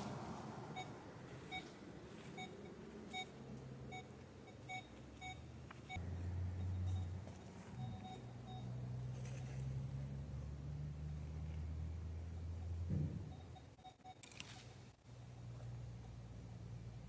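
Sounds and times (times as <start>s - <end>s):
metal detector beeps: 0.8s - 9.6s, 13.3s - 14.3s.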